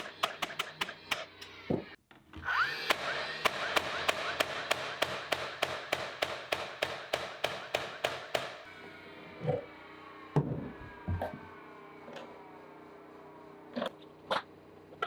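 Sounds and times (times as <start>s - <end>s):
tool striking wood: 0.0s - 1.9s, 2.9s - 8.7s
falling whine: 7.9s - 15.0s.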